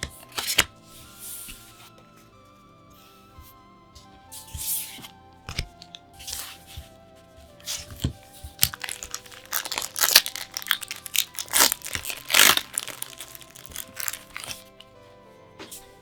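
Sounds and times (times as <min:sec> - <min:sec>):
quiet background music: 0:00.0 - 0:16.0
packaging crinkling and tearing: 0:07.5 - 0:14.8.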